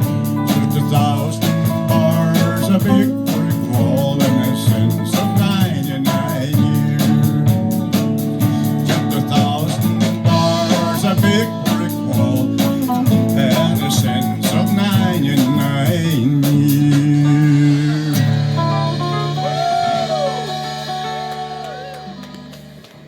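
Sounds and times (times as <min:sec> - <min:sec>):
country blues band playing: 0:00.0 - 0:23.0
guitar bending notes: 0:09.1 - 0:23.0.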